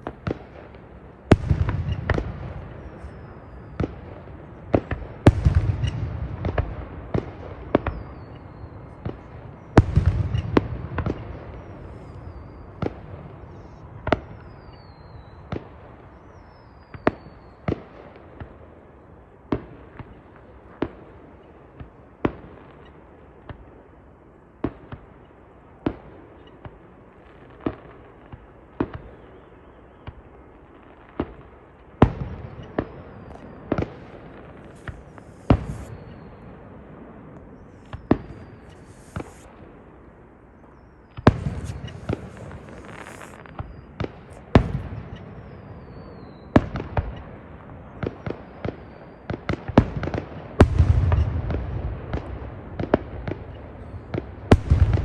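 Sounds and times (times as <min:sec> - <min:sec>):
fireworks bangs: 0:00.0 - 0:18.6, 0:30.8 - 0:55.0.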